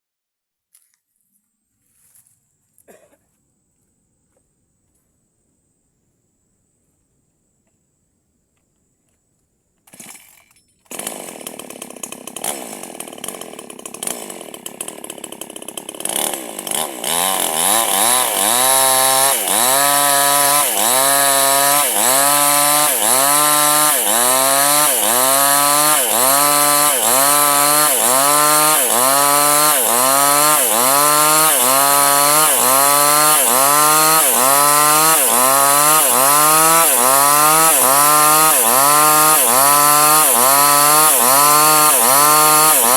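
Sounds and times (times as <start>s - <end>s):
chainsaw cutting timber: 9.8s - 42.9s.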